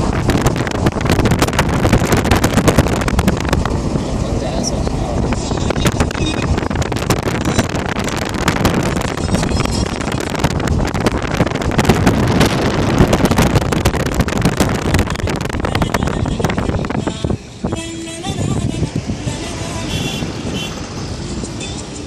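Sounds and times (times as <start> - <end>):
wind buffeting microphone: 0.0 - 21.6
moving vehicle rumble: 0.0 - 22.0.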